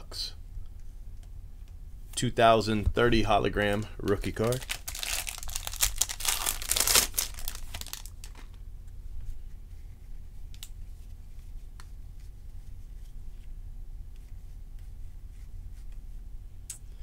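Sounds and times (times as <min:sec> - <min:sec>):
plastic packaging crinkling and tearing: 0:04.0 - 0:08.6.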